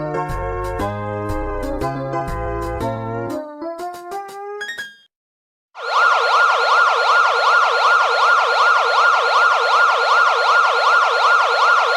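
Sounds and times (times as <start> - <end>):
electronic alarm siren sweeping: 5.8 - 11.9.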